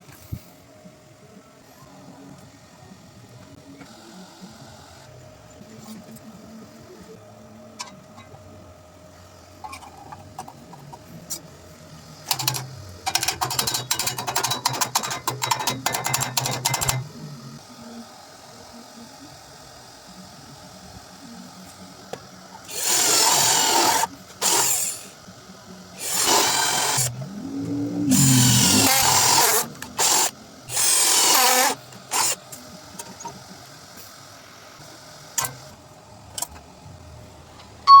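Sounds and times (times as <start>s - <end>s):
power tool hissing bursts: 22.7s - 25.2s, 26.0s - 27.2s, 28.0s - 32.4s.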